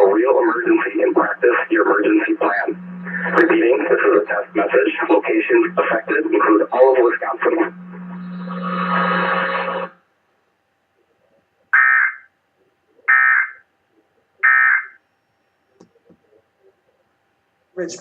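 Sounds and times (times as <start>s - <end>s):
loud buzz: 0.0s - 10.0s
warbling data tones: 0.0s - 10.0s.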